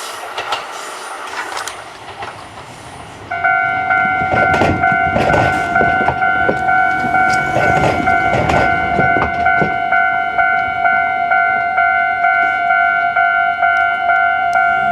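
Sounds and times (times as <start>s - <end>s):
train wheels clacking over rail joints: 0.0s - 10.7s
level-crossing warning bell: 3.3s - 14.9s.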